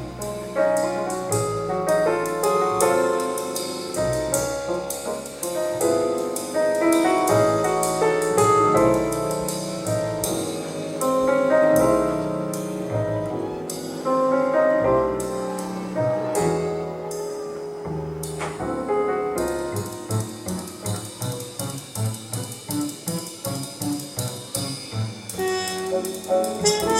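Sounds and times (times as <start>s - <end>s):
piano music with bass: 0.0s - 26.9s.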